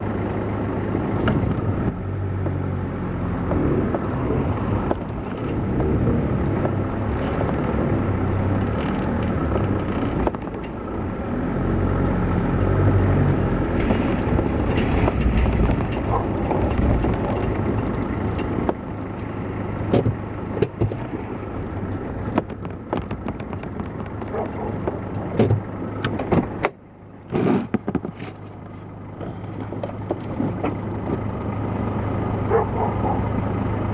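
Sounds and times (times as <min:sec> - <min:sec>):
vehicle motor running: 0:00.0 - 0:33.9
sharp knocks and rattles: 0:04.8 - 0:11.3, 0:12.6 - 0:21.3.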